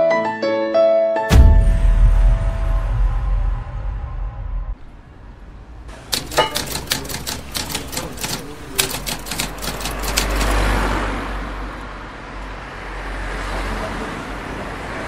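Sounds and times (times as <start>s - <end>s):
road traffic noise: 4.8s - 15.0s
sharp key clacks: 6.1s - 10.7s.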